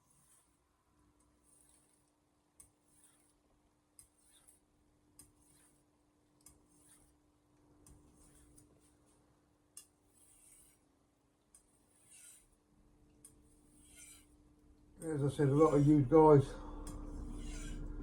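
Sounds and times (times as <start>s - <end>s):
knife scraping on whetstone: 0.0s - 0.6s, 1.4s - 3.4s, 4.0s - 5.9s, 6.5s - 7.2s, 8.1s - 9.0s, 10.0s - 10.9s, 11.6s - 12.6s, 13.3s - 14.4s, 17.2s - 17.9s.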